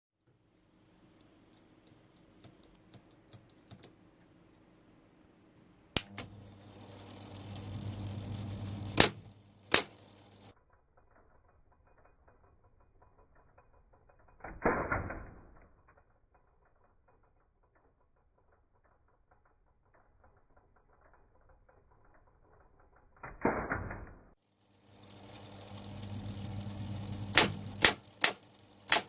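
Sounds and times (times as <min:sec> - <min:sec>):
typewriter clacking: 0:06.0 - 0:10.5, 0:26.2 - 0:29.0.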